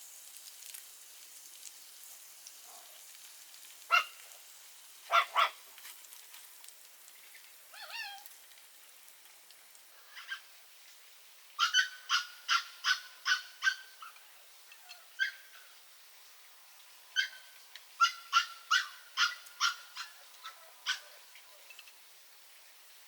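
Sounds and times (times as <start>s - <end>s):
small dog yapping: 3.9s - 4.2s, 5.1s - 5.6s, 7.8s - 8.2s, 11.6s - 14.2s, 18.0s - 21.1s.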